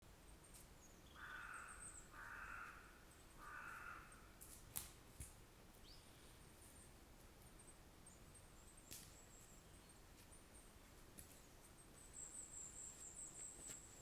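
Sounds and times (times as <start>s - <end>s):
harsh caw-like bird calls: 1.1s - 4.4s
sharp snap: 4.4s - 5.4s.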